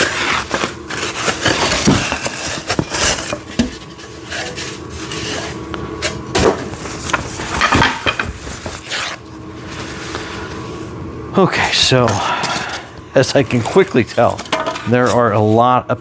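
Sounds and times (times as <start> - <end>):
cardboard rustling and scraping: 0.0 - 10.9
loose parts clattering: 7.0 - 8.8.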